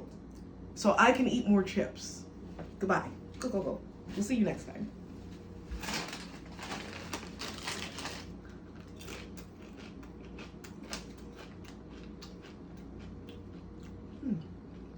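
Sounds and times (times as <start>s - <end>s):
chewing crunchy chips: 5.8s - 14.9s.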